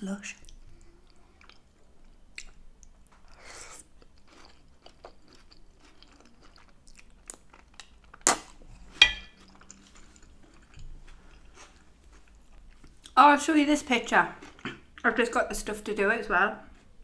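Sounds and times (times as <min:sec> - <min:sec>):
chewing spaghetti: 0:00.4 - 0:13.2, 0:14.4 - 0:15.1.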